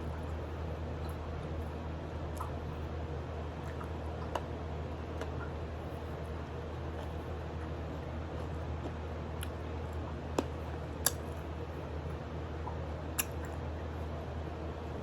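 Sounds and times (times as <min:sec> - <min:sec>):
steady low hum: 0:00.0 - 0:15.0
teeth clicking on bone: 0:10.4 - 0:11.3, 0:13.2 - 0:13.5.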